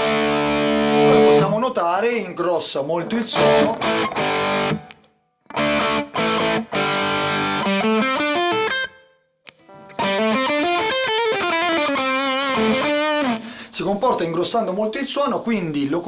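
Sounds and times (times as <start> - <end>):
distorted electric guitar: 0.0 - 1.6, 3.3 - 13.6.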